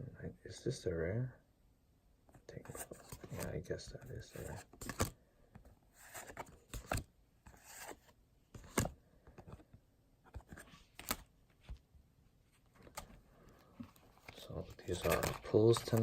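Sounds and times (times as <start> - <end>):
cards rustling and sliding: 2.4 - 3.6, 4.2 - 11.8, 12.6 - 16.0.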